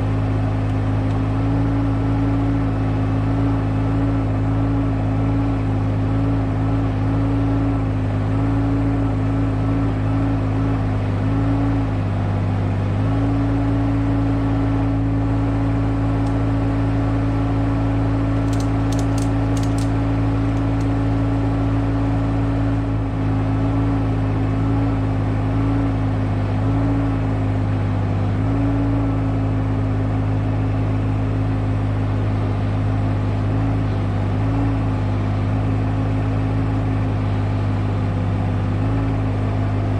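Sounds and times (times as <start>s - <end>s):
excavator diesel engine running: 15.4s - 21.5s.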